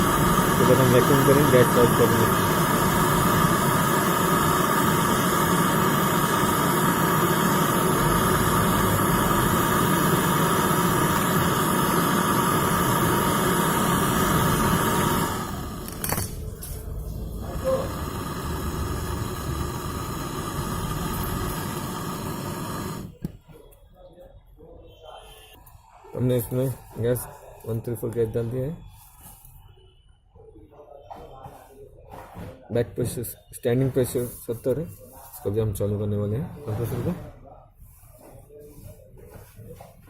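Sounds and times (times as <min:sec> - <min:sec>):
compressor humming: 0:00.0 - 0:23.4.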